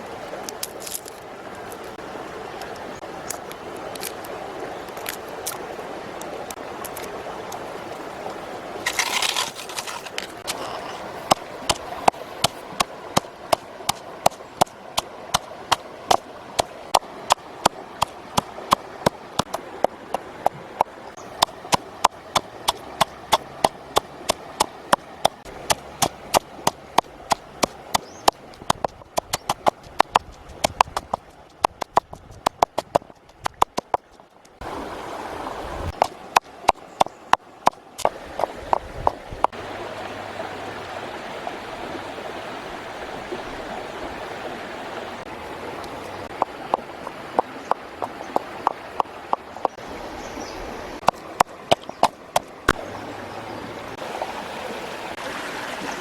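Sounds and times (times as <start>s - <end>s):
rapid sharp knocks: 20.8s - 34.6s.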